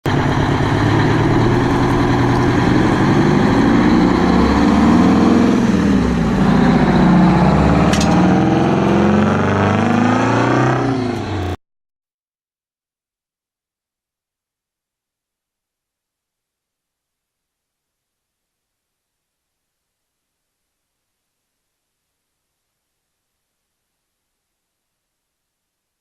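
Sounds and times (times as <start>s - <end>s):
diesel truck engine revving: 0.0s - 11.6s.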